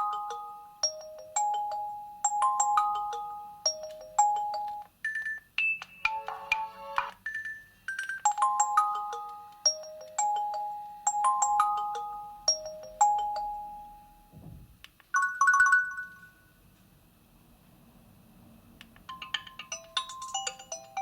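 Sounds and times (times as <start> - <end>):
phone ringtone bell-like melody: 0.0 - 14.3, 15.2 - 16.6, 19.1 - 21.0
soft knock: 14.4 - 14.7.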